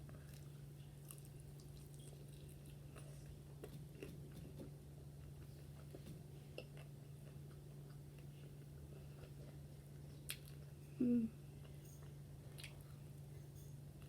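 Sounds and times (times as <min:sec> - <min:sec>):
chewing crispy fried chicken: 0:00.0 - 0:10.8
steady low hum: 0:00.0 - 0:14.0.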